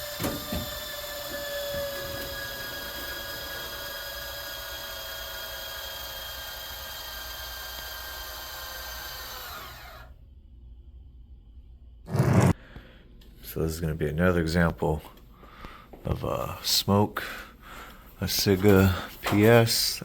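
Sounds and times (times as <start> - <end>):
actuator motor whining: 0.0 - 10.1.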